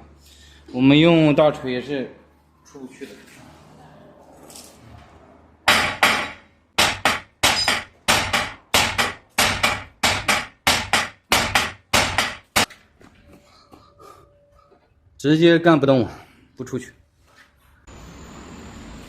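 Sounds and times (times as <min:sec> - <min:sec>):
sledgehammer striking metal: 0:05.6 - 0:12.7.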